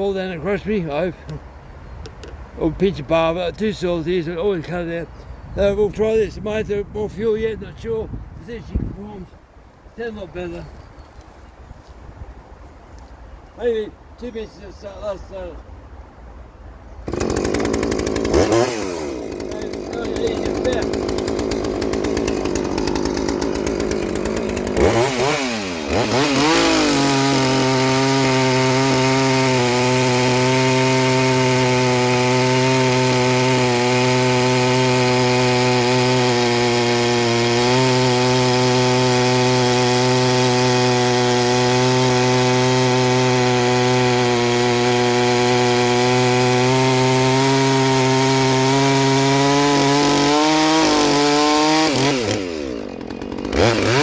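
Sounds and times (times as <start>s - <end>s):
chainsaw cutting wood: 17.0s - 54.0s.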